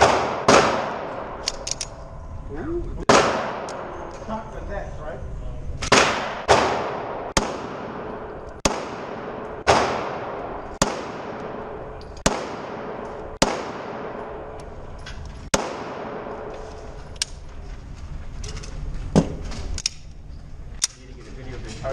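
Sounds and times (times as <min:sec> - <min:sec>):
handgun shots echoing: 0:00.0 - 0:02.0, 0:03.1 - 0:04.2, 0:05.8 - 0:14.7, 0:15.5 - 0:16.5.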